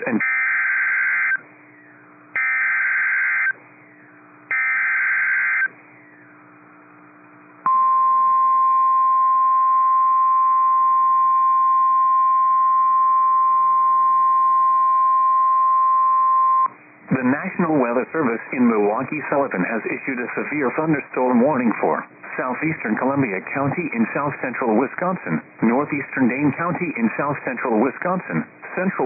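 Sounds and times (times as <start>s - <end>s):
steady warning alarm tone: 0.0s - 1.4s, 2.3s - 6.2s.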